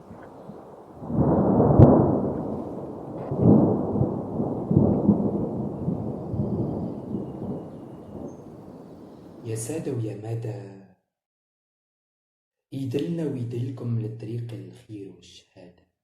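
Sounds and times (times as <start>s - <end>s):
thunder crack: 0.0s - 9.8s
thunder rumbling: 0.0s - 9.9s.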